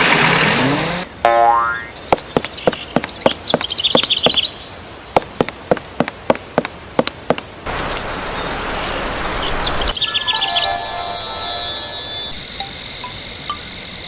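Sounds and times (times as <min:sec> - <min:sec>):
high chirping trill: 0:09.7 - 0:13.8
steady sharp ticking: 0:12.1 - 0:14.0.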